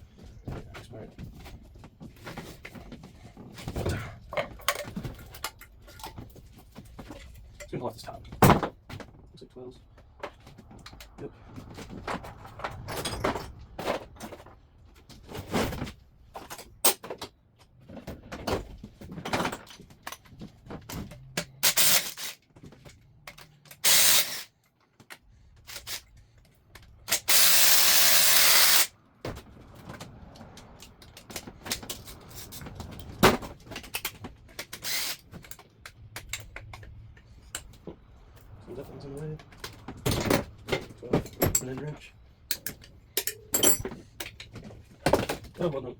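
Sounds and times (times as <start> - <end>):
hand tools clicking and clinking: 19.5 - 28.9, 30.4 - 37.9, 42.5 - 44.6.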